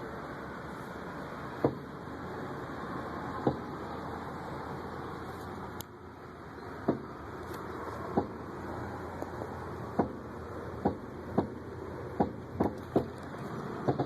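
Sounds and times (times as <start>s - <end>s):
background noise rush: 0.0s - 14.0s
car suspension clunking: 1.4s - 2.1s, 3.2s - 4.5s, 6.5s - 14.0s.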